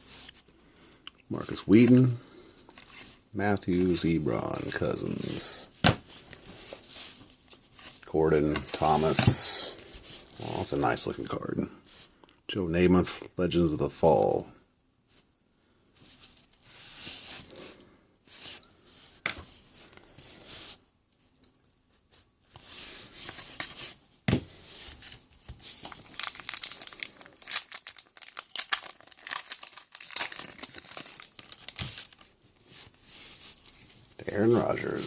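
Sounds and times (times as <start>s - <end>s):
foil wrapper crinkling and tearing: 25.8s - 33.0s.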